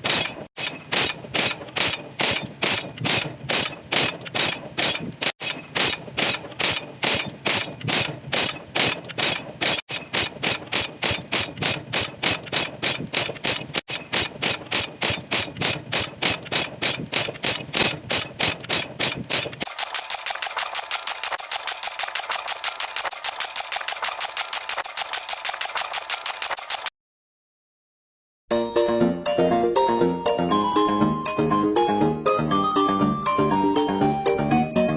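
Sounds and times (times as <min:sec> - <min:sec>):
pile driver pounding: 0:00.0 - 0:26.9
rapid rattle: 0:00.0 - 0:26.9.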